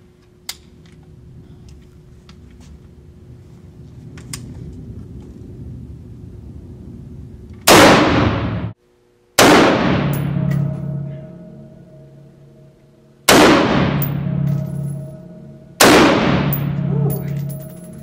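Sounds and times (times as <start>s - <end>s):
rifle shots echoing indoors: 7.7s - 8.8s, 9.4s - 11.7s, 13.2s - 18.0s.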